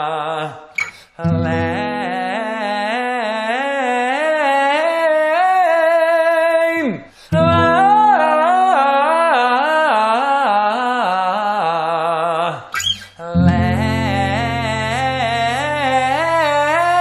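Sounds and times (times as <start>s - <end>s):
person vocalising a scale: 1.2s - 3.2s, 6.8s - 9.2s, 13.2s - 17.0s
held chord: 13.5s - 17.0s.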